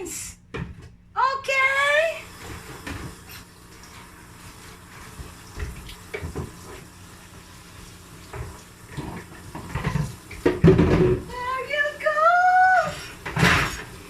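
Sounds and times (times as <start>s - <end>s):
tap water running into sink: 2.3s - 11.6s.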